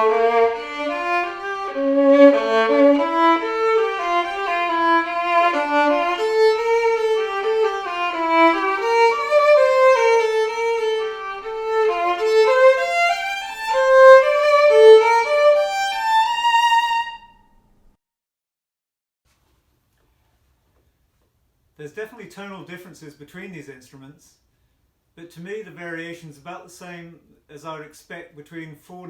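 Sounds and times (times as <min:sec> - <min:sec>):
solo violin melody: 0:00.0 - 0:17.7.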